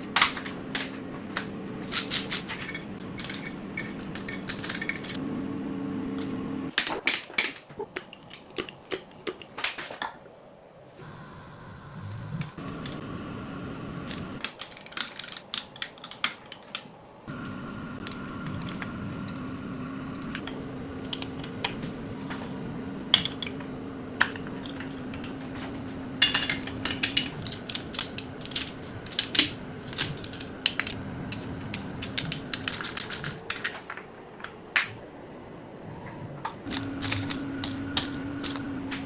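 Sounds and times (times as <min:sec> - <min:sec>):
metal tools clinking: 0:00.0 - 0:05.2, 0:14.4 - 0:16.9, 0:23.1 - 0:34.9, 0:36.7 - 0:38.7
steady low hum: 0:00.0 - 0:06.9, 0:10.7 - 0:14.4, 0:17.0 - 0:39.0.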